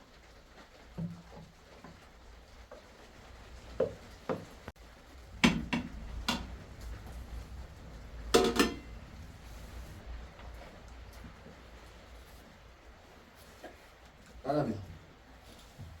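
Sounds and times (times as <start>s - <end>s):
dishes and utensils clinking: 8.4s - 9.0s.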